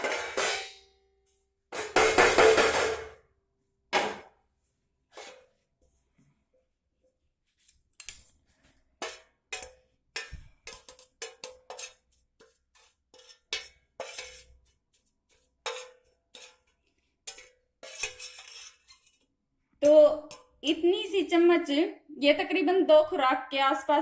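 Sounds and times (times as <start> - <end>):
spoon scraping a dish: 5.1 - 5.6, 7.6 - 19.4.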